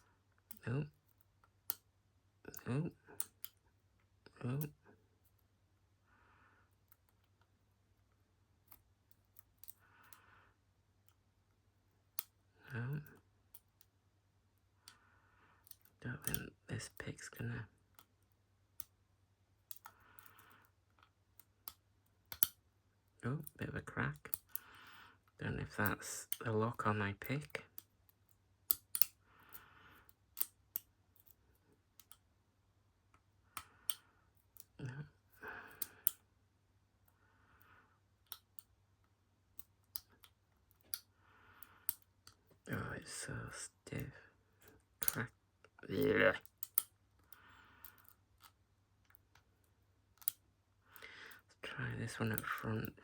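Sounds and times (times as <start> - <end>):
lock pick metal clicks: 21.6 - 22.6, 28.7 - 29.2, 45.0 - 45.2, 46.4 - 46.9, 47.8 - 49.4, 50.2 - 50.4
lock pick clicking in padlock: 21.7 - 22.6, 28.7 - 29.2.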